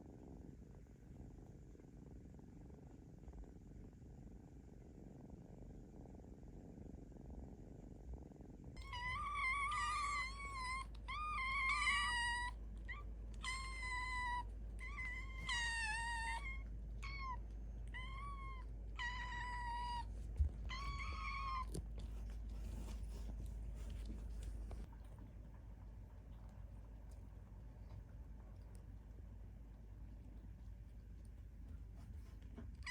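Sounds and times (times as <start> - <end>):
low purr: 0.0 - 32.9
kitten meowing: 8.8 - 21.8.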